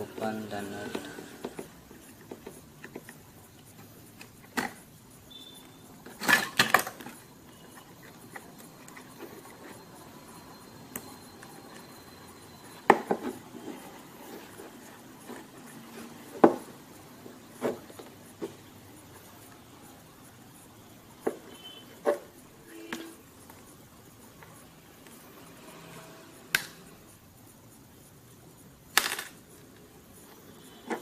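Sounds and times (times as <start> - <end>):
phone parts clicking and knocking: 1.5 - 5.0, 6.0 - 7.3.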